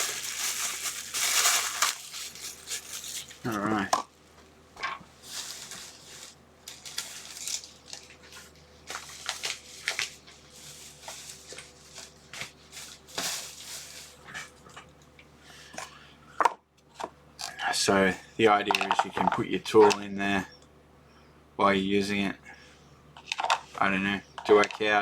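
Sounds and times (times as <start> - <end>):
plastic packaging crinkling: 0.0 - 3.9, 5.2 - 14.6.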